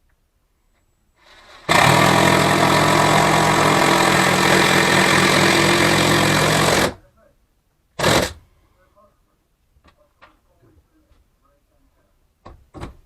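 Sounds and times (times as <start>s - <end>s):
power drill motor running: 1.3s - 7.0s, 8.0s - 8.4s.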